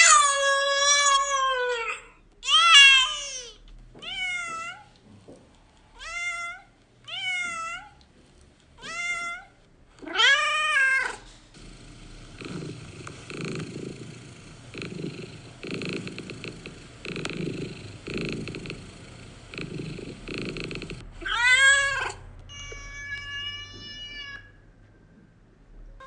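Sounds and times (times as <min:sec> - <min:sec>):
cat meowing: 0:00.0 - 0:04.9, 0:06.0 - 0:08.0, 0:08.8 - 0:11.2, 0:21.2 - 0:24.5
cat purring: 0:11.6 - 0:21.1.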